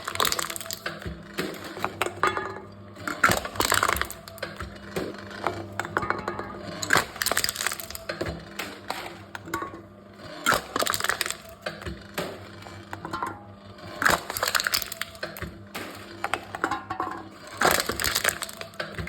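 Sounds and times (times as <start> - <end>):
metal cans being crushed: 0.0 - 19.0.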